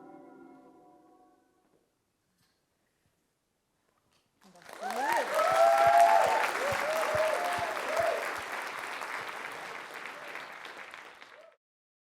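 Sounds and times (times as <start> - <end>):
audience applauding: 4.4 - 11.6
whooping cheers: 4.7 - 10.5, 11.2 - 11.6.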